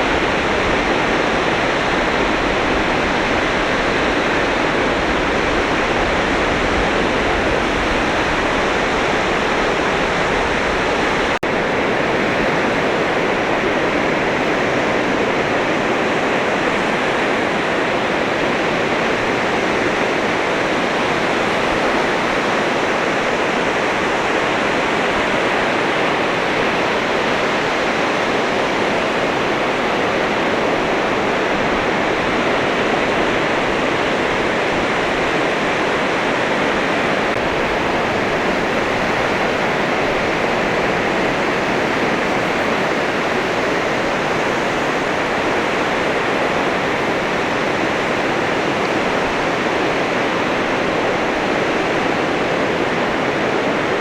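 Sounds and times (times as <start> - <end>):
sea surf washing onto beach: 0.0 - 54.0.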